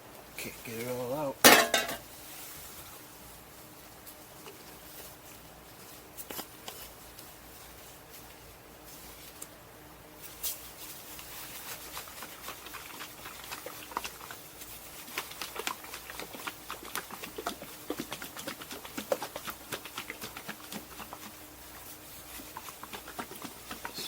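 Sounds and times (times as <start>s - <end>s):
containers clicking and tapping: 1.5s - 2.0s.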